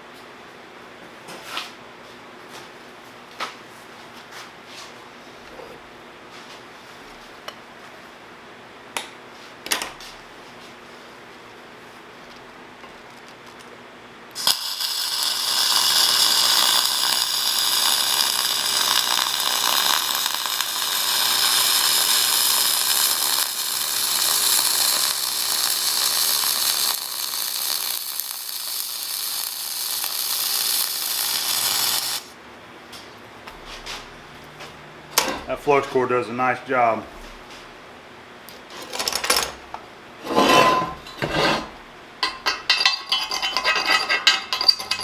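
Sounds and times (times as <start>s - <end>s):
welding arc crackling: 14.3s - 32.4s.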